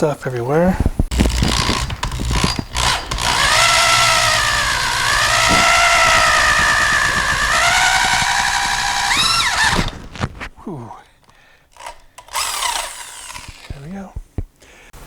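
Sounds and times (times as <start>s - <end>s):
power drill boring a hole: 1.1s - 10.5s, 11.8s - 13.8s.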